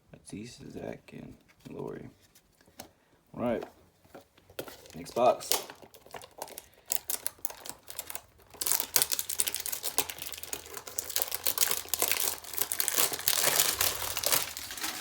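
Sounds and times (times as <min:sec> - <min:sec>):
plastic wrapping crinkling: 0:03.4 - 0:15.0.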